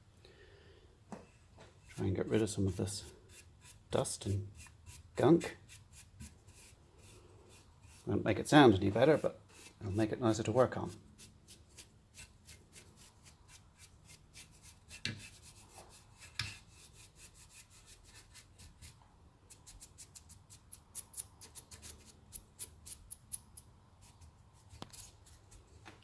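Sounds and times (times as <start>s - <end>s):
brush sweeping a speaker: 1.8s - 20.1s.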